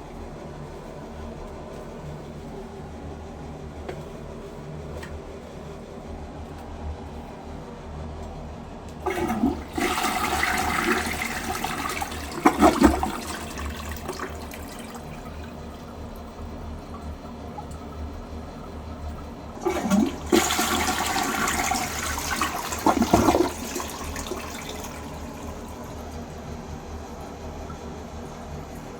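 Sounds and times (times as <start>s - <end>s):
toilet flushing: 8.9s - 28.9s
toilet bowl gurgling gulp: 9.0s - 26.2s.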